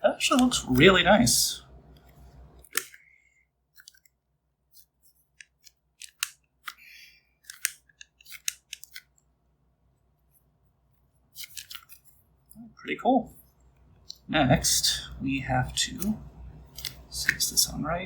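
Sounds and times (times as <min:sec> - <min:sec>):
plastic parts clicking: 0:02.0 - 0:09.3, 0:15.9 - 0:17.6.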